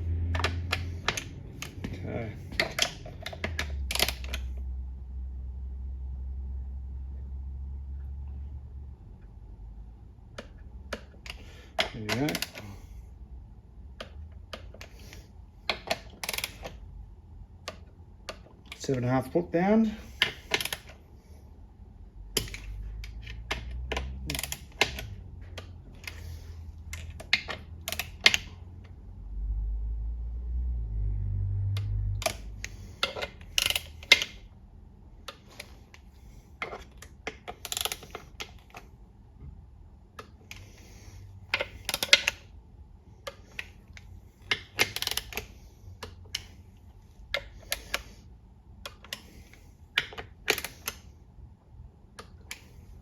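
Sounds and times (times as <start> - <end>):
torque wrench clicking: 23.9 - 25.2, 32.2 - 34.4, 37.6 - 38.2, 44.4 - 46.5.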